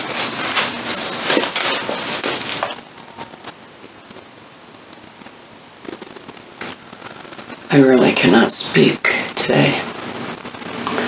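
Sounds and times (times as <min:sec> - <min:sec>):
packaging crinkling: 0:00.0 - 0:07.7.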